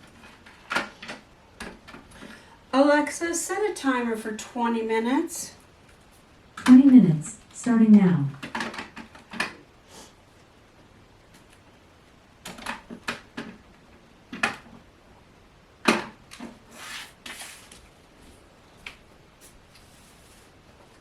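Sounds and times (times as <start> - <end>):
rustling: 16.5 - 18.5, 19.4 - 21.0.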